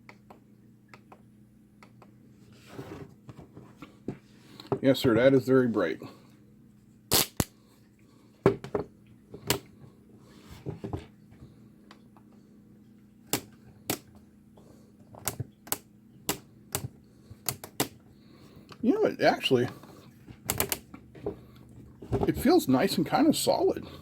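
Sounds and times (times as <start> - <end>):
sharp plastic clicks and knocks: 15.1 - 18.0.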